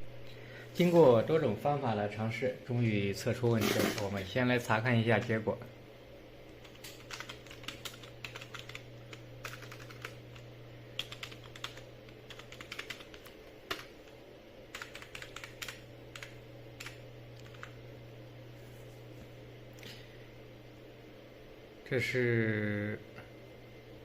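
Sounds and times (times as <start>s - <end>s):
steady low hum: 0.0s - 24.0s
computer keyboard typing: 6.6s - 17.8s.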